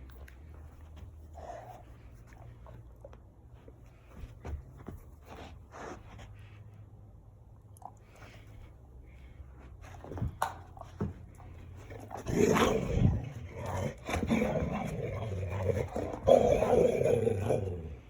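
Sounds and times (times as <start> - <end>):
dog grumbling growl: 12.1 - 18.0.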